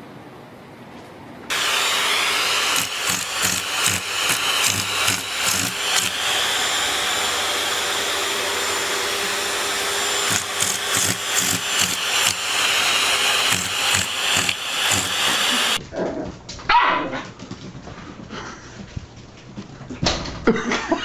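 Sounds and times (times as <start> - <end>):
small appliance motor running: 1.5 - 15.8
quick irregular strokes: 1.9 - 6.3, 10.2 - 15.8
airy hiss: 10.2 - 15.8.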